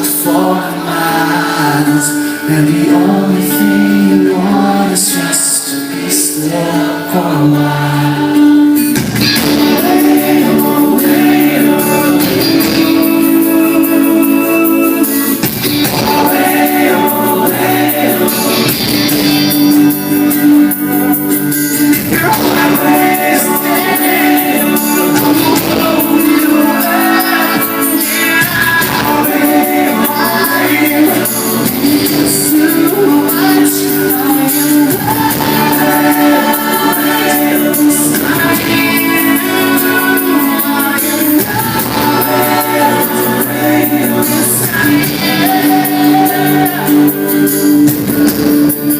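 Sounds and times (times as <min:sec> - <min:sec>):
live pop-rock band playing: 0:00.0 - 0:48.9
person singing: 0:00.0 - 0:48.9.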